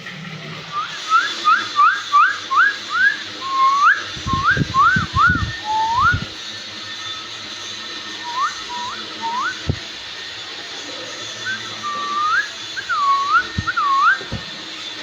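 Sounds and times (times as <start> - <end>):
short rising whistled notes: 0.7 - 6.4, 8.1 - 9.9, 11.4 - 14.5
low thumps: 13.4 - 14.6.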